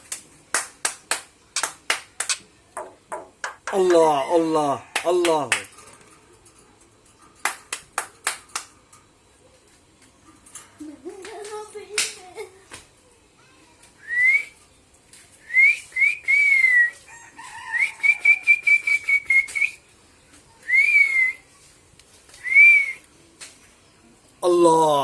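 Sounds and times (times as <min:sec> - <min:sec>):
myna whistling: 0:14.0 - 0:14.6, 0:15.4 - 0:17.0, 0:17.6 - 0:19.8, 0:20.6 - 0:21.4, 0:22.4 - 0:23.1.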